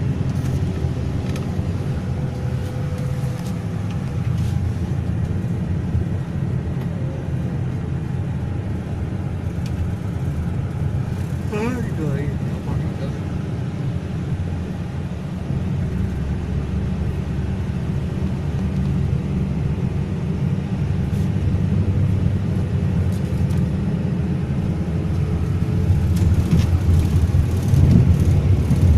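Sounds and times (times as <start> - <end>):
car engine and road noise: 0.0 - 28.9.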